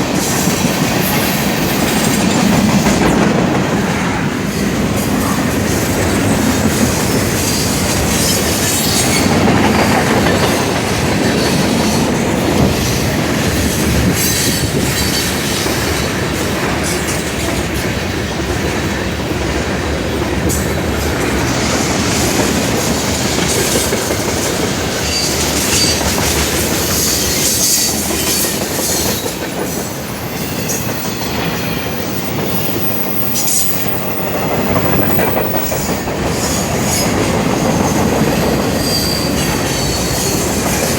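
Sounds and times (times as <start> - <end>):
freight train cars rolling past: 0.0 - 40.9
rail joint clicks: 0.0 - 40.9
wheel squeals: 25.0 - 29.4, 38.6 - 40.9.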